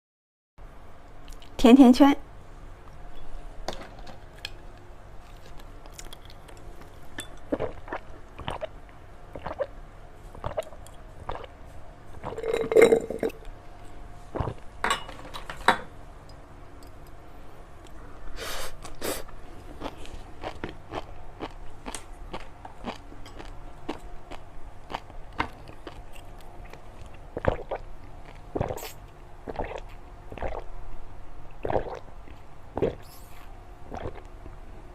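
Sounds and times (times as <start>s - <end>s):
chewing and crunching sweets: 5.2s - 8.7s, 18.8s - 30.7s.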